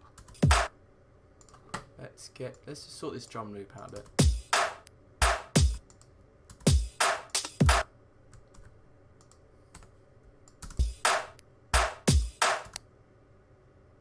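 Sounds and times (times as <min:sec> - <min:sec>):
drum and bass drum loop: 0:00.3 - 0:00.7, 0:04.1 - 0:05.8, 0:06.6 - 0:07.8, 0:10.7 - 0:12.8.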